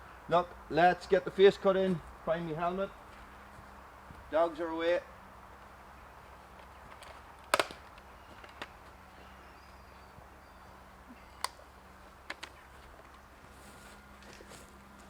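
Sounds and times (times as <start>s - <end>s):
sharp clicks and knocks: 6.9s - 8.7s.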